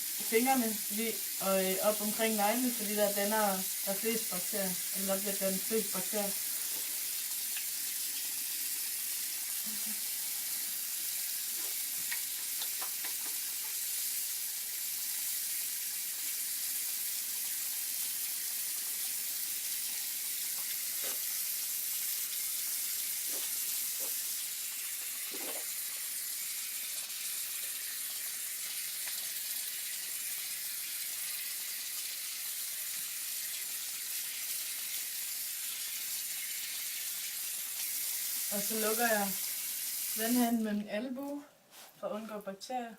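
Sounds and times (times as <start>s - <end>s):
tap running into a sink: 25.1s - 25.8s.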